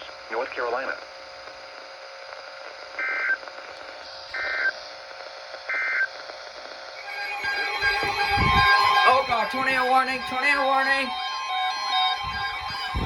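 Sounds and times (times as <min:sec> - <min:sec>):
radio hiss: 0:00.0 - 0:13.0
warbling data tone bursts: 0:07.0 - 0:13.0.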